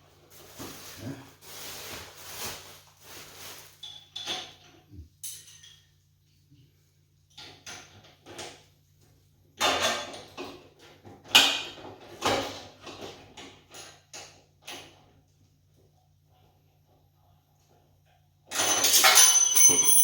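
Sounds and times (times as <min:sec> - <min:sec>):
tools and metal clattering: 0:03.8 - 0:05.9, 0:18.5 - 0:20.0.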